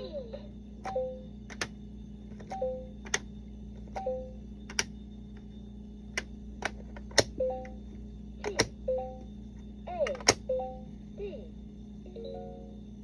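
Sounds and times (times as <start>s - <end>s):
plastic letter pieces clicking: 1.5s - 1.7s, 2.4s - 3.2s, 4.7s - 4.9s, 8.4s - 8.7s, 10.1s - 10.4s.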